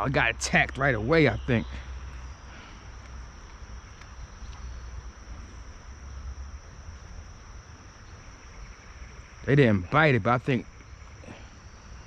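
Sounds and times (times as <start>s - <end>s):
insects droning: 0.0s - 12.0s.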